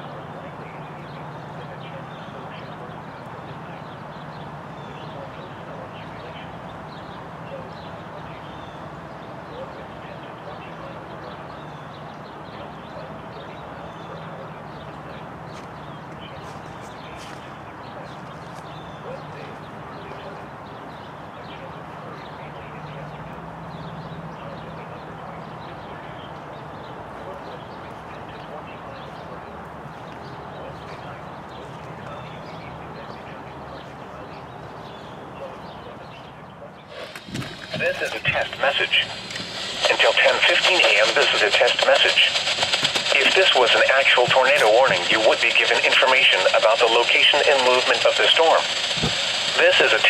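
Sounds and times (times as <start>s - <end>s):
outdoor background hum: 0.0s - 50.0s
steady low hum: 36.8s - 50.0s.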